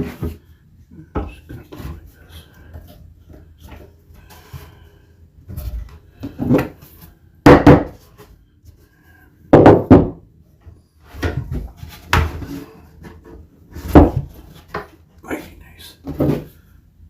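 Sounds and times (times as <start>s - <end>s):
wooden panels knocking: 7.4s - 8.0s, 9.5s - 10.2s.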